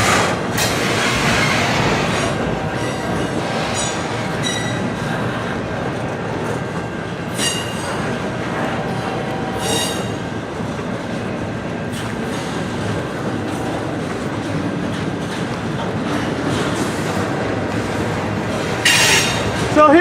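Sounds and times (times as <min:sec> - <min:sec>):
train wheels rumbling on rails: 0:00.0 - 0:20.0
high-pitched wheel squeals: 0:01.3 - 0:04.8, 0:07.3 - 0:07.9, 0:09.6 - 0:10.2.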